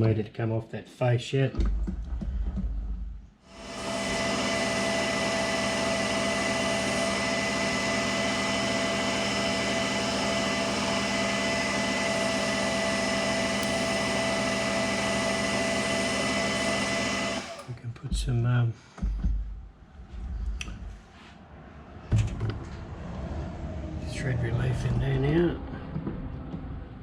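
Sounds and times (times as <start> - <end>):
metal lathe whining: 3.5 - 17.7.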